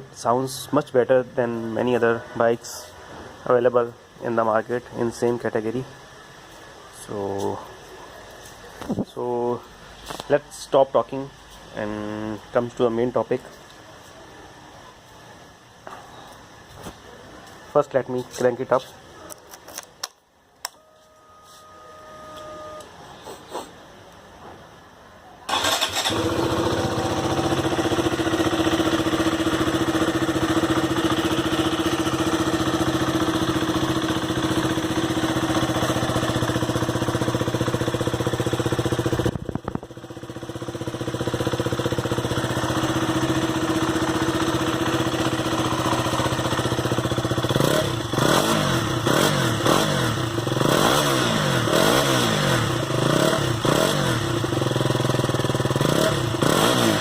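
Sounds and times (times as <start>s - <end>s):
motorcycle engine idling and revving: 25.5s - 57.0s.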